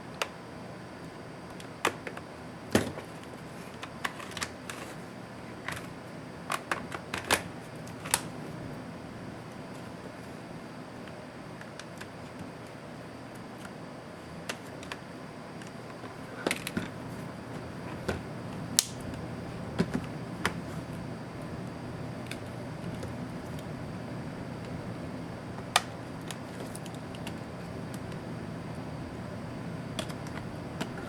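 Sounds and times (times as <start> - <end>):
steady low hum: 0.0 - 31.0
plastic snaps: 17.9 - 19.2.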